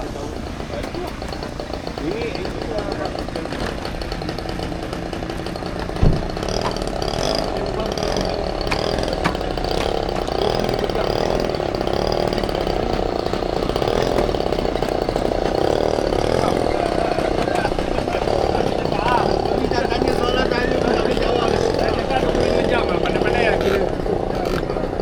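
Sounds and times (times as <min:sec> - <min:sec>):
model airplane motor buzzing: 0:00.1 - 0:25.0
sharp knock: 0:06.0 - 0:06.5.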